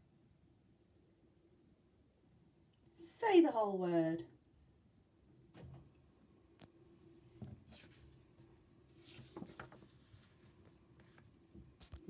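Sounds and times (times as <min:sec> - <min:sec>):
faint rustling: 0:08.9 - 0:12.0.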